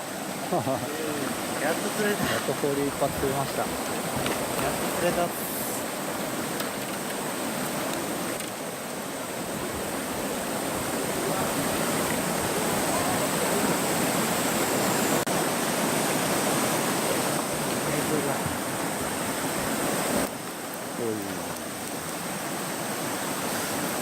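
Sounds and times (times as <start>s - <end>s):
stream water rushing: 0.0s - 24.0s.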